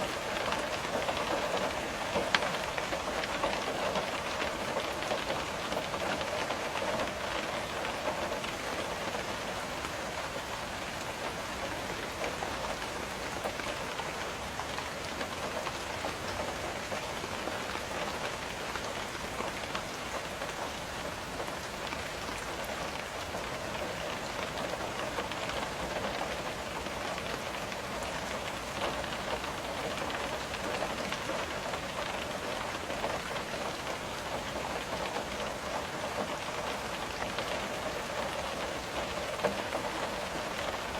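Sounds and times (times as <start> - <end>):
rain striking window glass: 24.6 - 40.9.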